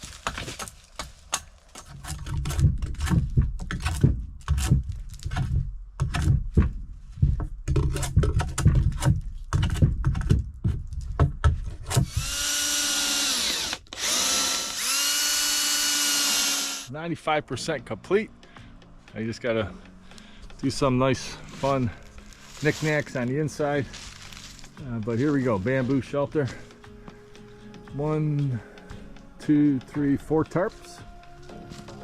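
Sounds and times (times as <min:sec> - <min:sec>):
hatchet chopping wood: 0:00.0 - 0:06.7, 0:07.7 - 0:16.6
drone motors whining: 0:12.0 - 0:16.9.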